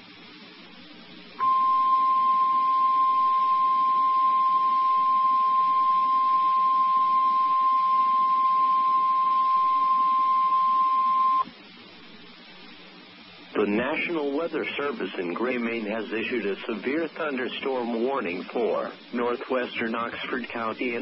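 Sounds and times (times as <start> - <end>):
steady high alarm tone: 1.4 - 11.5.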